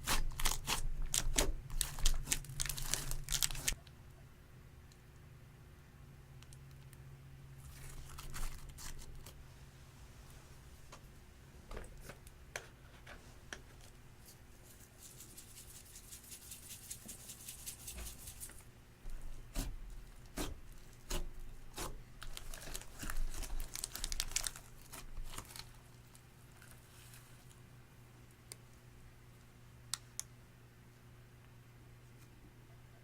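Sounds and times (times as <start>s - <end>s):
sticky slime crackling: 0.0s - 3.8s, 20.3s - 25.7s.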